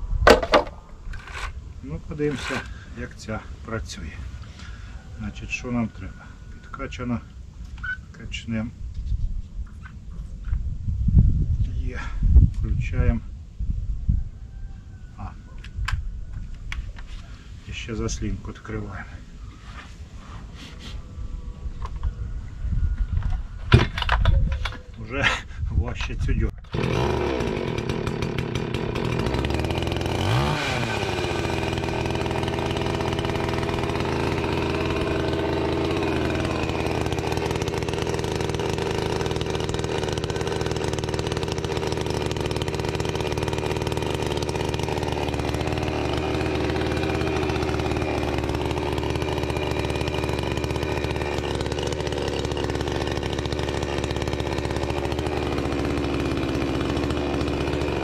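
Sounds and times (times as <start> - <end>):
chainsaw idling: 2.2 - 3.0, 26.6 - 58.0.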